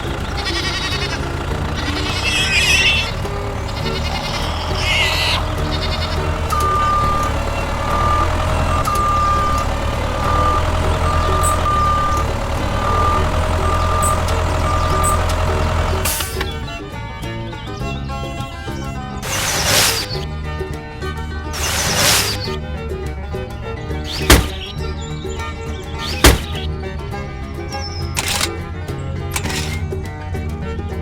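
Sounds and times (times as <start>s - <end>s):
low engine hum: 0.0s - 30.9s
animals bleating: 0.3s - 7.4s
reversing beeper: 6.5s - 15.3s.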